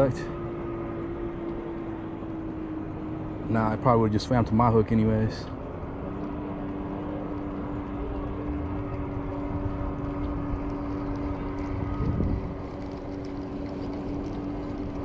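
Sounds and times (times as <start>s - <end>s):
motorboat engine humming: 0.0s - 15.0s.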